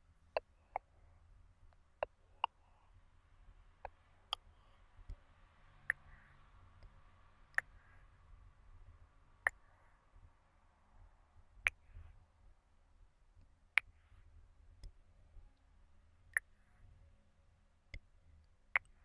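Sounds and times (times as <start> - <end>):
tongue clicks: 1.7 - 2.7, 5.9 - 6.1, 7.6 - 7.8, 9.5 - 9.7, 13.8 - 14.0, 16.3 - 16.6, 18.8 - 19.0
soft breathing: 4.2 - 8.2.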